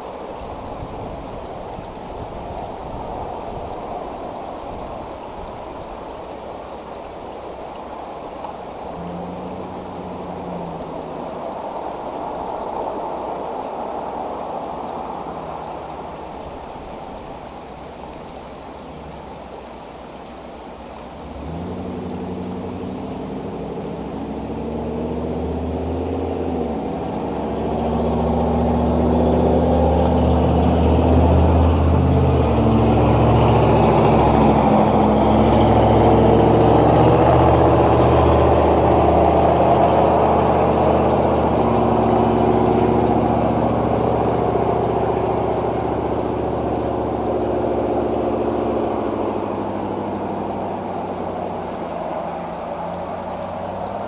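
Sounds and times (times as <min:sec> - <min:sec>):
motor engine passing by: 0:08.8 - 0:16.1, 0:21.2 - 0:54.0.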